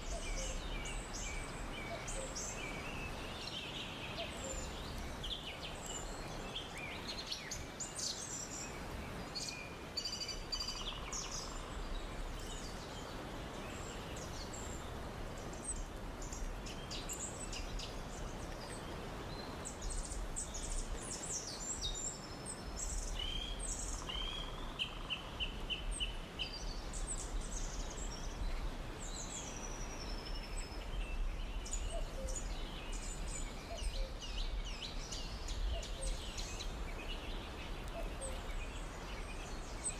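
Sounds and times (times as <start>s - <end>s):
birds chirping and trilling: 19.9s - 39.9s.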